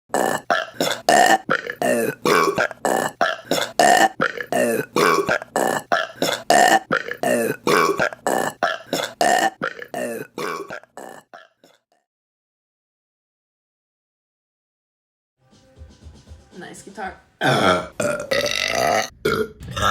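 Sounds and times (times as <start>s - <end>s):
chopped looping burps: 0.1s - 11.8s, 17.4s - 19.9s.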